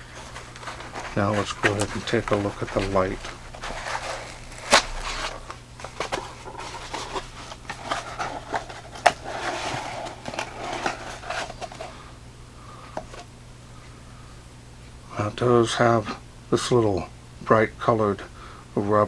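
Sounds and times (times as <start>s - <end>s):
hands handling a flashlight: 0.0s - 11.9s.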